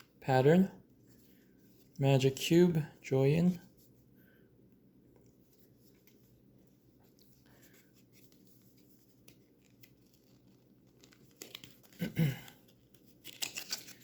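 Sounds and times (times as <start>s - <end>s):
cardboard packaging clicks: 9.6s - 14.0s.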